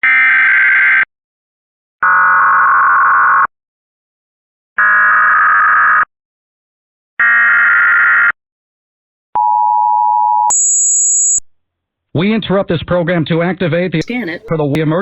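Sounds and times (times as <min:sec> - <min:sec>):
two-tone attention signal: 0:09.4 - 0:11.4.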